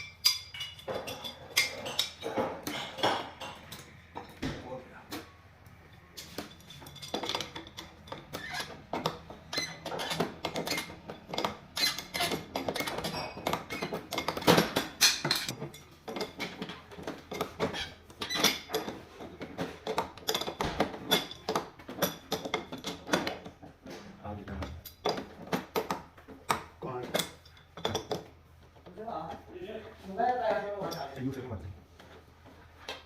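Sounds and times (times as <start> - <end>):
metal tools clinking: 0.0 - 4.3, 5.9 - 23.6, 27.0 - 28.3, 30.6 - 31.5.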